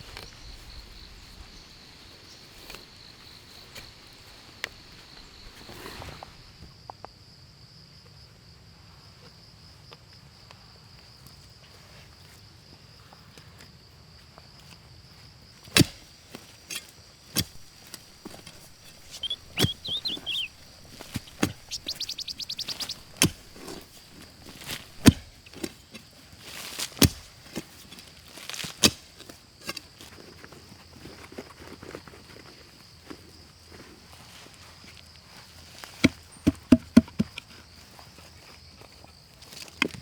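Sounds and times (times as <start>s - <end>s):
high insect drone: 17.0s - 25.5s
sharp knocks: 17.4s - 25.3s
chirps: 17.5s - 25.1s.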